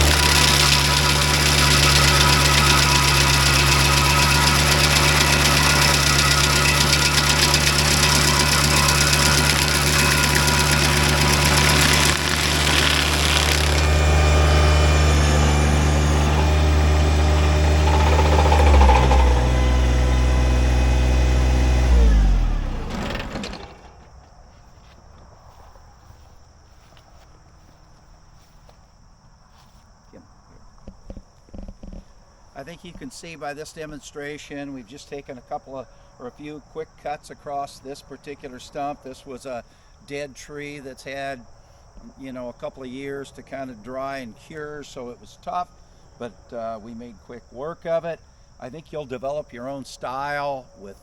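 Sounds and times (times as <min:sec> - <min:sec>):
tractor engine drone: 0:00.0 - 0:24.8
stump grinder grinding hiss: 0:00.0 - 0:24.9.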